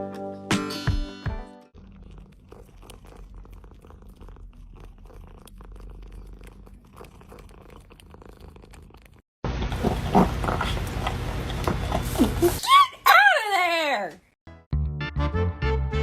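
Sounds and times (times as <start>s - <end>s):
cat purring: 1.8s - 9.2s.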